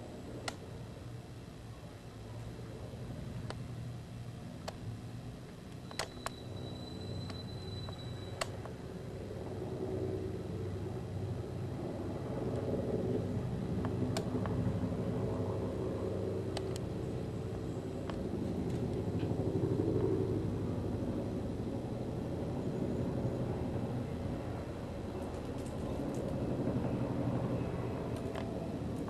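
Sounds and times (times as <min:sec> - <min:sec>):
helicopter rotor rumble: 0:00.0 - 0:29.0
sharp clicks: 0:00.4 - 0:00.6, 0:05.7 - 0:06.4, 0:07.2 - 0:08.8, 0:16.5 - 0:16.9.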